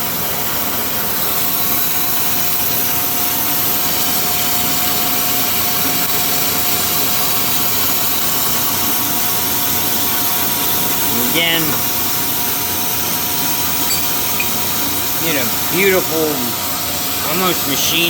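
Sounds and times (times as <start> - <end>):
thin steady whine: 13.8 - 15.7.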